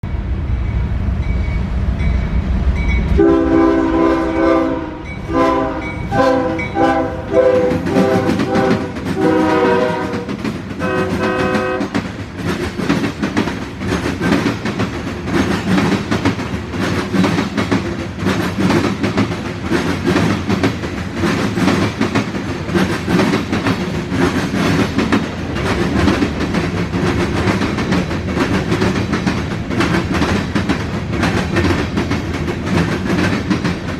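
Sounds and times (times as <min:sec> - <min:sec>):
diesel locomotives rumbling: 0:00.0 - 0:33.9
locomotive horn blasts: 0:03.2 - 0:12.0
wheels clacking over rail joints: 0:05.4 - 0:33.9.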